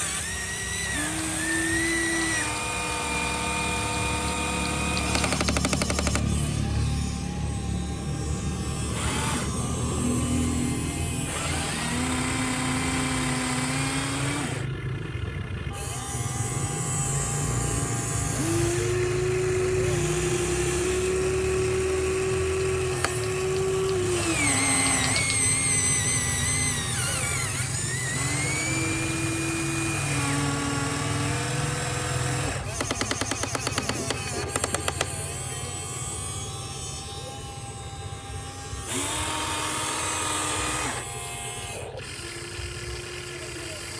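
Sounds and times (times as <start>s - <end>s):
small electric motors whining: 0.0s - 43.9s
rapid clicks: 4.4s - 7.0s, 29.8s - 35.5s.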